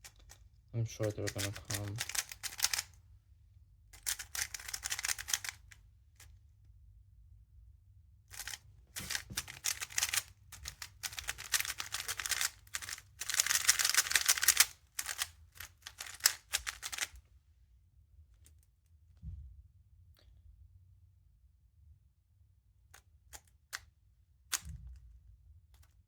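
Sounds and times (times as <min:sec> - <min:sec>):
puzzle cube clicking and rattling: 0:00.0 - 0:03.0, 0:04.0 - 0:05.8, 0:08.3 - 0:17.2, 0:24.5 - 0:24.8.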